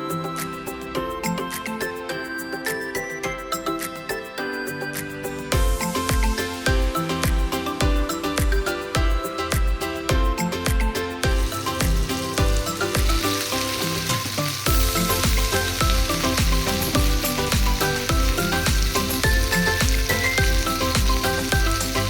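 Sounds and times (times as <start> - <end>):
background music with steady beat: 0.0 - 22.0
chicken sizzling in oil: 11.3 - 22.0.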